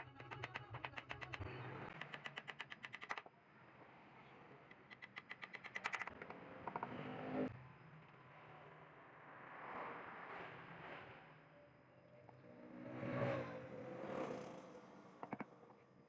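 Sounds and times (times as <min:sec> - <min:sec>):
rapid mechanical clicking: 0:00.0 - 0:03.3, 0:04.7 - 0:06.3.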